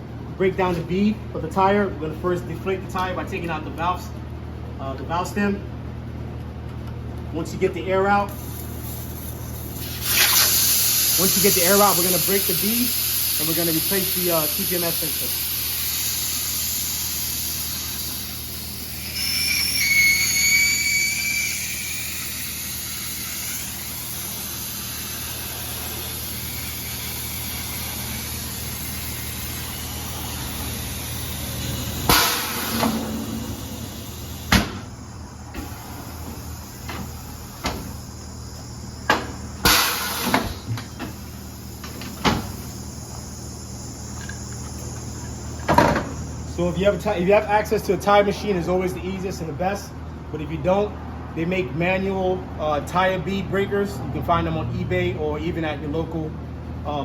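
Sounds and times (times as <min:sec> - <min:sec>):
steady low hum: 0:00.0 - 0:57.0
air hissing from tire valve: 0:08.3 - 0:47.1
whistling squeal: 0:16.0 - 0:34.5, 0:35.1 - 0:47.1
knocks and clunks from wheel: 0:36.9 - 0:38.0, 0:41.8 - 0:42.6.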